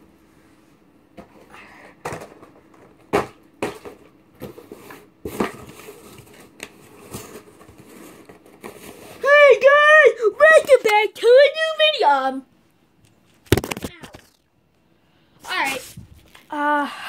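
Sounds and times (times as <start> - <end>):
packaging handled and set down: 13.2 - 14.4.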